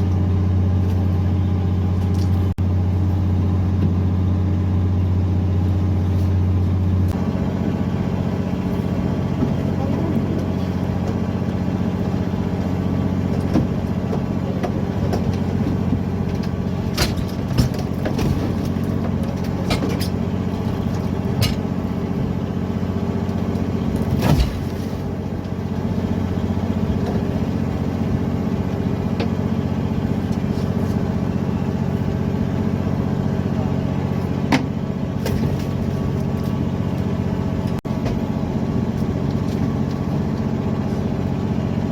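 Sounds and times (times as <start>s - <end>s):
boat engine droning: 0.0s - 41.9s
clatter: 13.3s - 21.7s.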